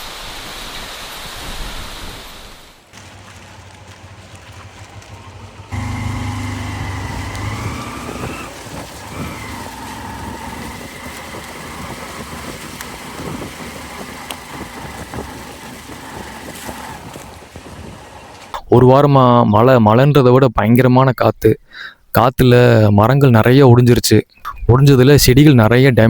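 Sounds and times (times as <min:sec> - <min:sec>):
vehicle engine running: 0:03.0 - 0:18.6.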